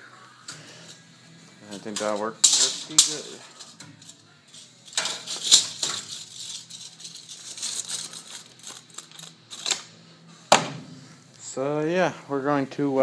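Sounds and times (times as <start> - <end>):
rustling handling noise: 1.7 - 9.8.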